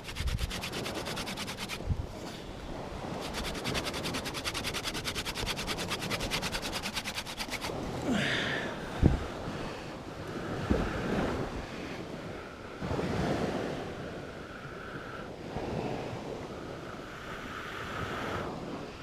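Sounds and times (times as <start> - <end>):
wooden spindle grinding on board: 0.0 - 1.8, 3.1 - 8.0.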